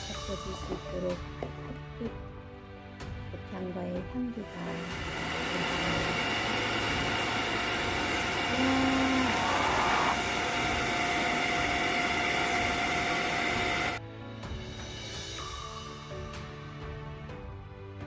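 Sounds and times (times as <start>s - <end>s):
small electric motor whirring: 4.6s - 14.0s.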